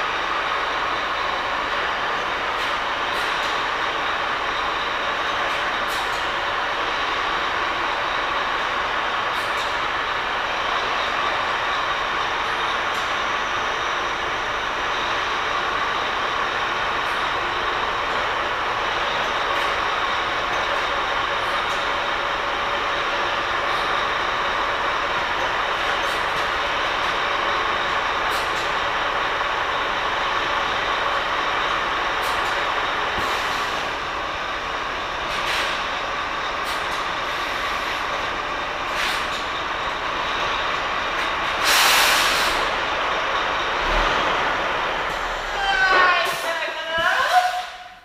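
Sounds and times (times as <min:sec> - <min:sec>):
truck engine running: 0:00.0 - 0:46.8
air brake hiss: 0:41.6 - 0:42.6.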